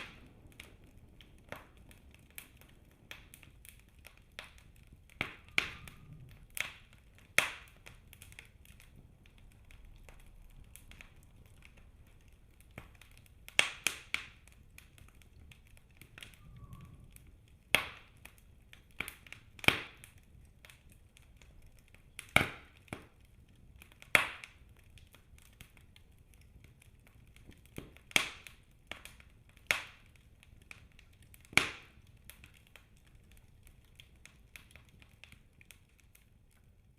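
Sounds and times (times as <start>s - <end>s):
faint low rumble: 0.0s - 13.6s, 14.4s - 18.9s
wood fire crackling and popping: 0.0s - 36.9s.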